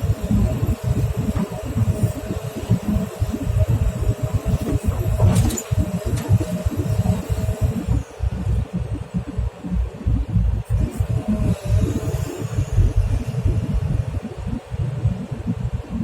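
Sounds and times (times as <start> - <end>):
diesel engine rumbling: 0.0 - 16.0.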